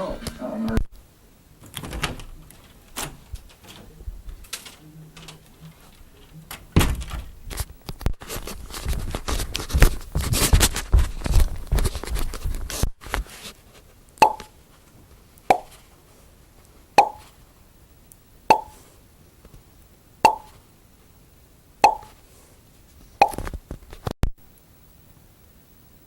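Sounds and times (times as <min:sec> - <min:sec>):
hollow ringing plops: 0:14.2 - 0:14.5, 0:17.0 - 0:17.2, 0:18.5 - 0:18.8, 0:20.3 - 0:20.5, 0:21.8 - 0:22.1.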